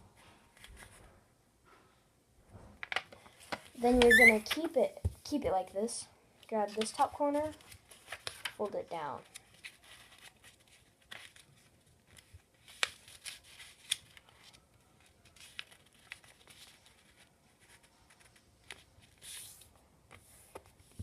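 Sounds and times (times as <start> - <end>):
paper being folded and creased: 6.5 - 21.0.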